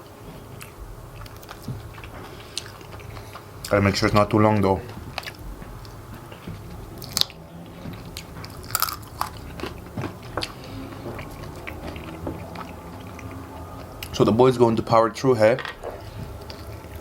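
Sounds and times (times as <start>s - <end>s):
person chewing: 0.4s - 14.3s, 15.8s - 17.0s
sharp crunches: 1.2s - 12.4s.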